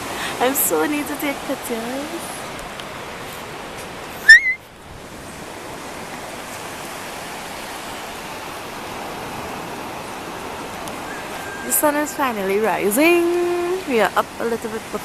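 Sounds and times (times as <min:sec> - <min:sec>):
seashore rushing: 0:00.0 - 0:15.0
high rising squeak: 0:04.3 - 0:04.6.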